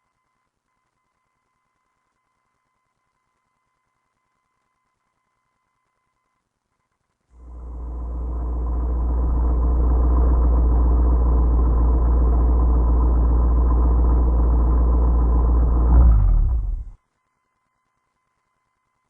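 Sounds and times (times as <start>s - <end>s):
car engine rumble inside cabin: 7.4s - 17.0s.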